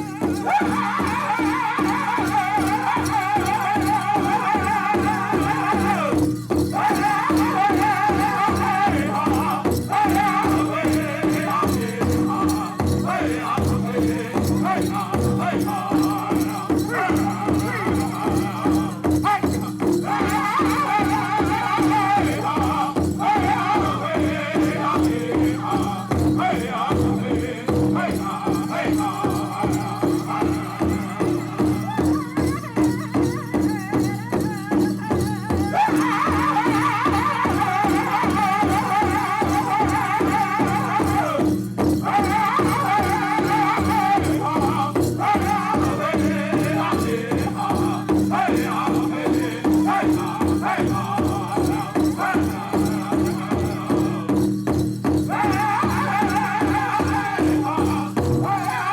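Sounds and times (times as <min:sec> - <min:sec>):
group singing in unison: 0:00.0 - 0:33.9, 0:35.5 - 0:58.9
big drum steady beat: 0:00.0 - 0:58.9.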